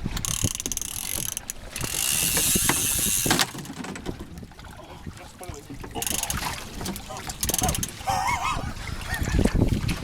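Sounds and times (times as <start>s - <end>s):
fishing reel ratchet clicking: 0.1s - 3.5s, 6.0s - 6.4s, 7.4s - 8.0s.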